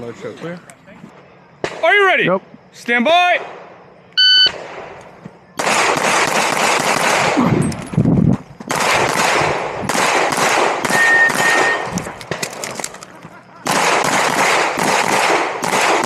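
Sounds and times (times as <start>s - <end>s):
rapid pistol shots: 5.6s - 7.6s, 8.7s - 12.9s, 13.6s - 16.0s.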